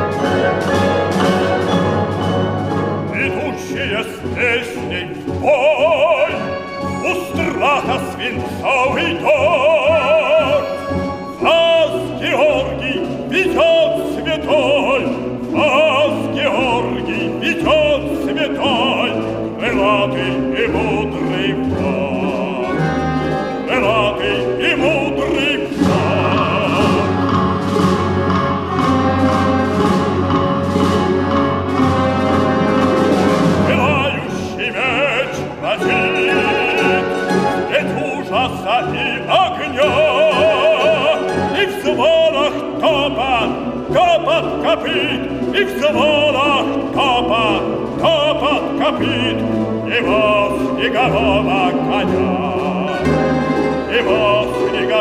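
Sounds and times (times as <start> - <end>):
folk string and accordion orchestra: 0.0 - 55.0
man singing with vibrato: 3.0 - 27.6, 33.3 - 55.0.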